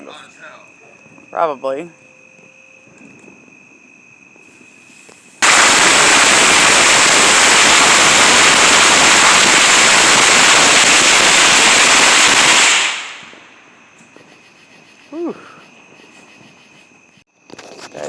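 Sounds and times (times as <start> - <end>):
firecrackers crackling: 5.4 - 13.6.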